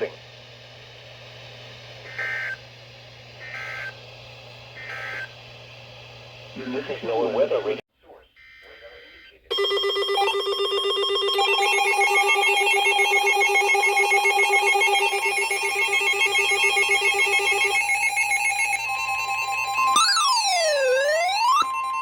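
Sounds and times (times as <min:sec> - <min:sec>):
trilling electronic alert tones: 0:09.5 - 0:22.0.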